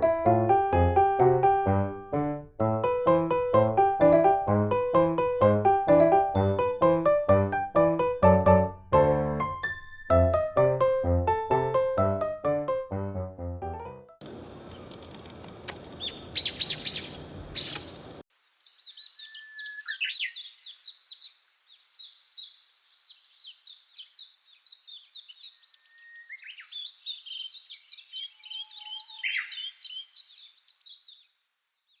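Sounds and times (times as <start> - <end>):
background noise: 14.2 - 32.0
bird calling and chirping: 15.9 - 31.3.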